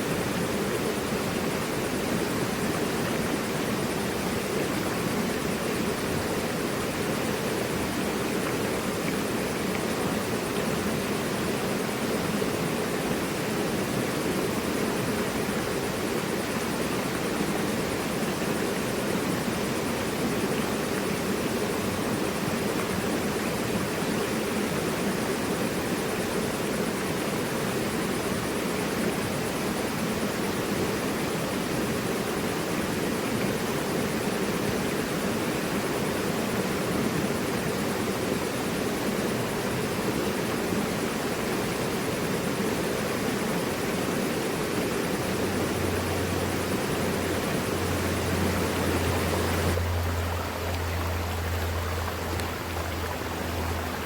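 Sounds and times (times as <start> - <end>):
river rushing over rocks: 0.0 - 54.0
low steady hum: 42.6 - 54.0.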